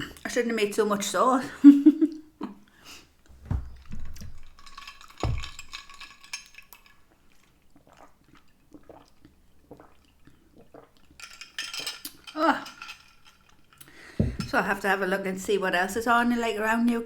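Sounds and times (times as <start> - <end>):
dull thumps: 3.3 - 5.9, 14.2 - 14.6.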